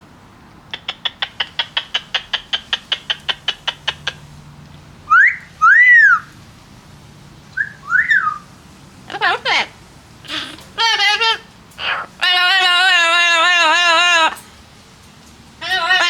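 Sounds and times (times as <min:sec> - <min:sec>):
parrot clicking: 0:00.7 - 0:04.2
parrot whistling: 0:05.1 - 0:06.3, 0:07.6 - 0:08.5.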